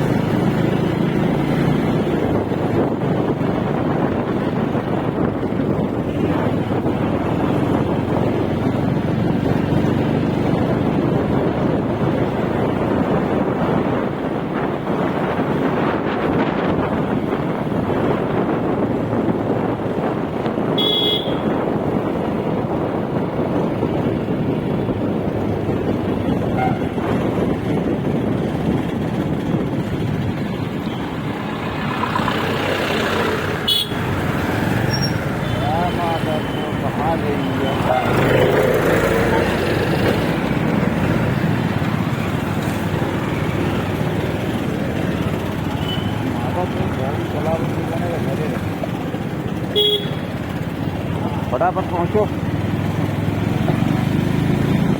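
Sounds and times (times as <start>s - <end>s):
moving road vehicle: 0.0s - 54.9s
short horn toot: 20.8s - 21.5s, 26.5s - 27.0s.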